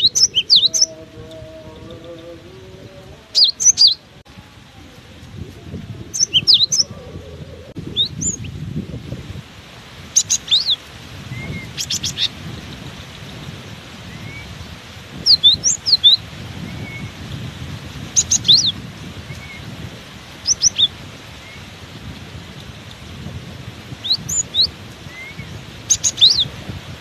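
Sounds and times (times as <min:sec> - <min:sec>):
bird chirping: 0:00.0 - 0:04.1, 0:06.1 - 0:08.6, 0:10.2 - 0:10.8, 0:11.4 - 0:12.3, 0:15.3 - 0:17.1, 0:18.2 - 0:19.6, 0:20.4 - 0:21.6, 0:24.0 - 0:26.5
wind buffeting microphone: 0:00.0 - 0:27.0.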